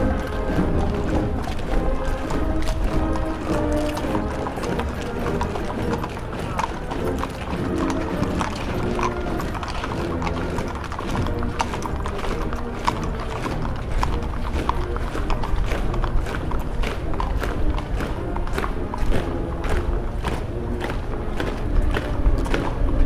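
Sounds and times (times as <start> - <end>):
orchestral low chords: 0.0 - 23.0
rapid percussion tapping: 0.0 - 23.0.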